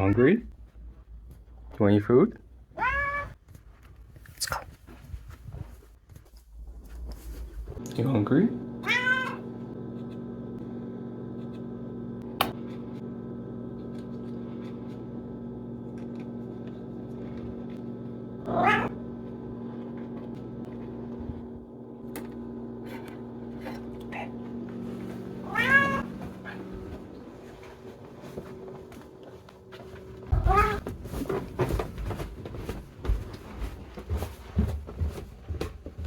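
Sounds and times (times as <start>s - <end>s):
cat meowing: 2.8s - 3.4s, 8.8s - 9.4s, 18.4s - 19.0s, 25.4s - 26.1s, 30.3s - 30.8s.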